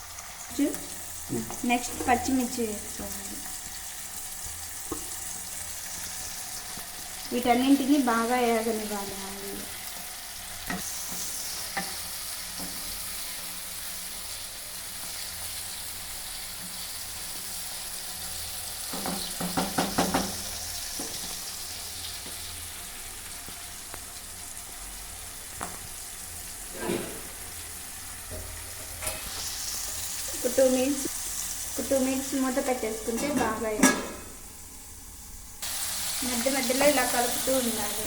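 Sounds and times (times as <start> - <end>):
vegetables sizzling in hot oil: 0.0 - 38.0
spatula scraping a pan: 26.7 - 27.5.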